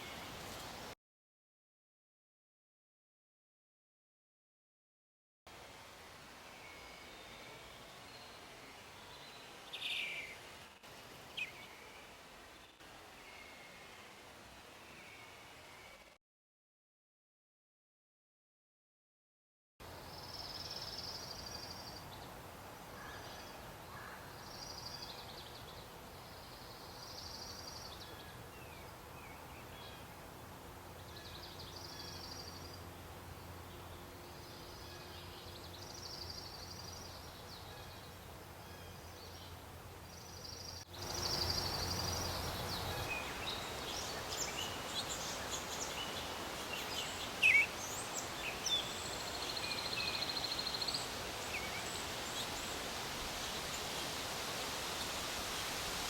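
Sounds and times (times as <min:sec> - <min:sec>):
outdoor background noise: 0:00.0 - 0:01.0, 0:05.5 - 0:16.2, 0:19.8 - 0:56.0
bluebirds calling: 0:31.0 - 0:54.0.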